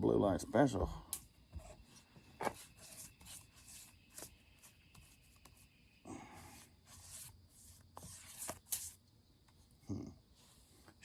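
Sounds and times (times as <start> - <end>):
brushing and rubbing on wood: 1.6 - 5.8, 6.4 - 9.0.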